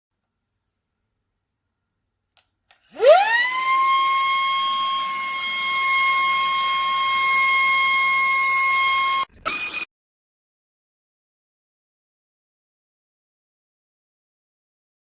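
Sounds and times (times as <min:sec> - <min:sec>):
handheld vacuum motor whine: 0:02.9 - 0:09.9.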